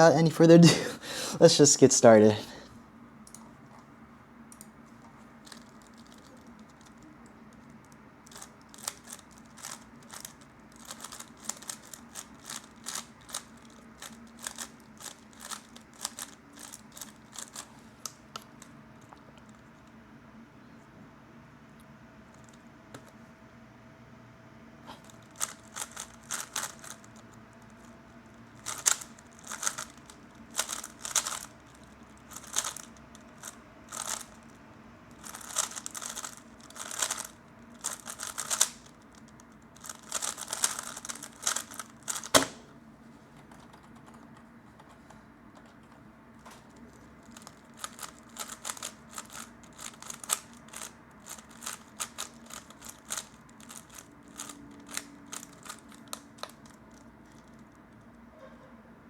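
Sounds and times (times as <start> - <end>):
puzzle cube clicking: 8.3 - 17.7, 25.3 - 27.0, 28.6 - 31.5, 32.3 - 34.3, 35.2 - 39.2, 39.8 - 42.6, 47.3 - 56.6.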